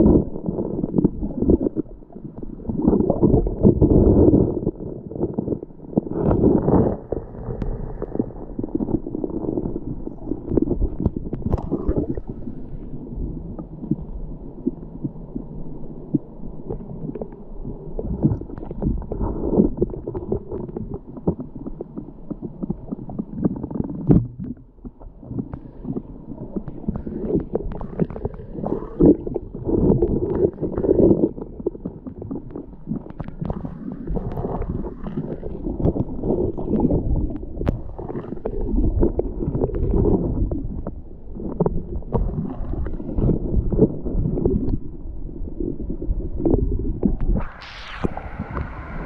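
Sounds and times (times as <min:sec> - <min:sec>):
muffled underwater stream gurgling: 0:00.0 - 0:49.0
underwater knocks: 0:18.1 - 0:38.0.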